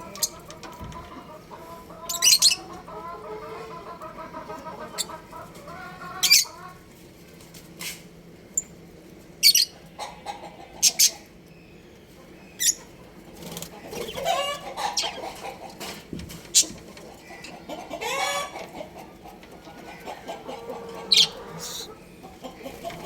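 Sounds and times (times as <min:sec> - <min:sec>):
drawn-out pitched bird calls: 0:00.0 - 0:06.7, 0:16.5 - 0:23.0
budgerigars chirping: 0:01.6 - 0:03.6, 0:06.1 - 0:06.6, 0:10.8 - 0:11.2, 0:12.5 - 0:12.9, 0:19.9 - 0:22.0.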